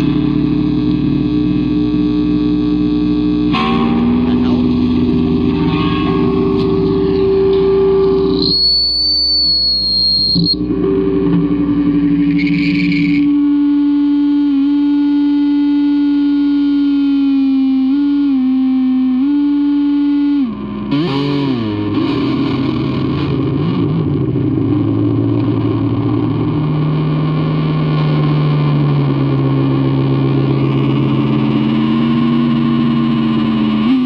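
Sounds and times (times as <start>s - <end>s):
distorted electric guitar feedback: 0.0s - 34.0s.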